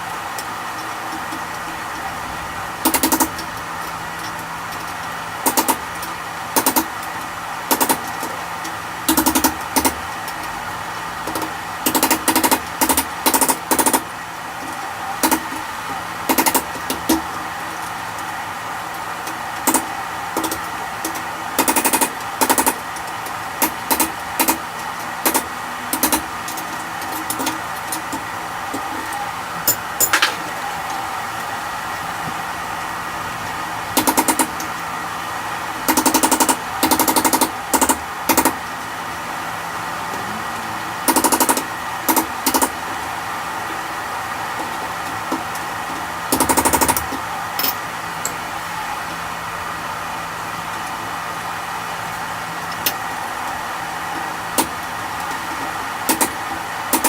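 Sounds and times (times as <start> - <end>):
hammer striking steel: 29.7 - 30.6.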